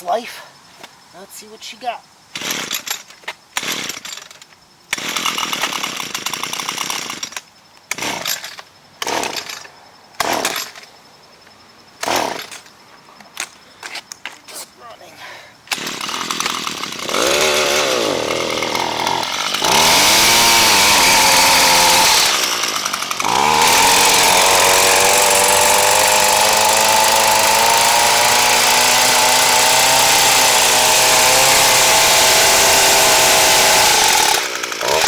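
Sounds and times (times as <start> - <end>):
two-stroke hedge trimmer revving: 4.9 - 7.3, 15.7 - 35.0.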